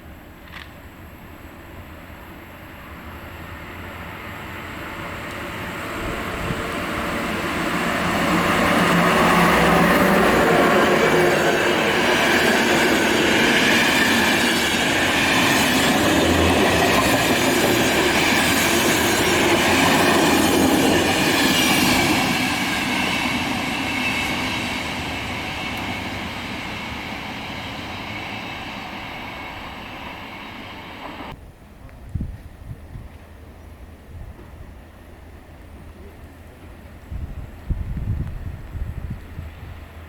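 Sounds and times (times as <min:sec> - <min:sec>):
train wheels rushing on rails: 0:01.8 - 0:31.4.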